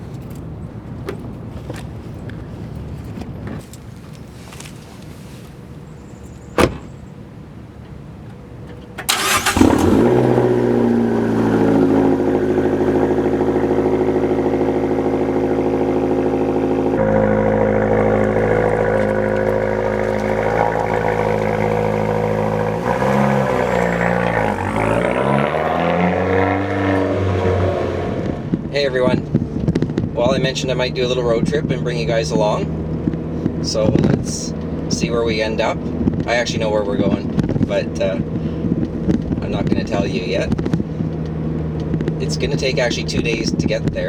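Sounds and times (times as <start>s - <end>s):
car engine starting and running: 0.0s - 44.0s
engine revving: 9.0s - 37.2s.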